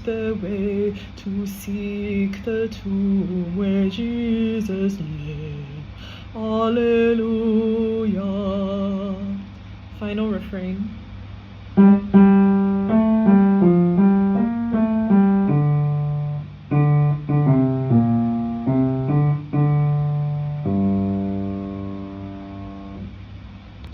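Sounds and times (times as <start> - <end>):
piano playing hymn chords: 11.8 - 23.2.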